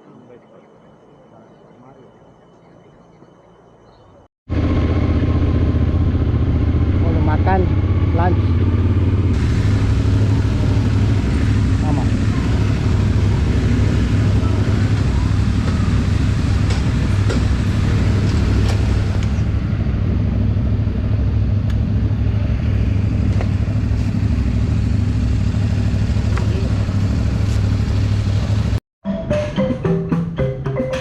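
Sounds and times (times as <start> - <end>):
motorcycle engine and wind: 4.5 - 28.8
music with percussive beat: 29.1 - 31.0.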